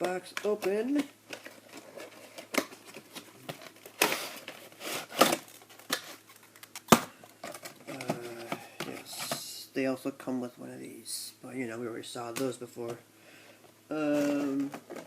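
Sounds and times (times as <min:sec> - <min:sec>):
packaging clicks and rustles: 0:00.0 - 0:09.4.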